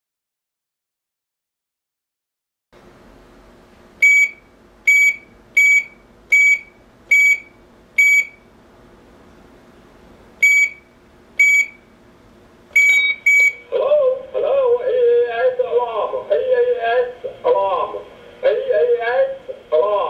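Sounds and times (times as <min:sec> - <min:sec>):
short high electronic beeps: 0:10.4 - 0:10.8, 0:12.8 - 0:13.6.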